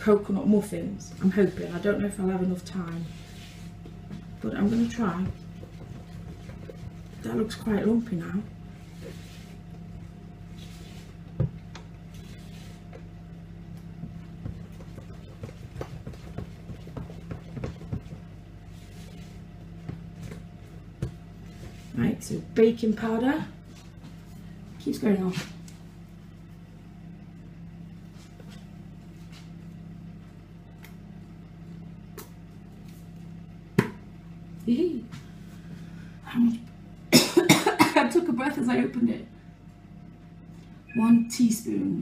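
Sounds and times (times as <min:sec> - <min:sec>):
low steady hum: 0:00.0 - 0:42.0
spatula scraping mixing bowl: 0:01.2 - 0:09.8, 0:14.4 - 0:22.0.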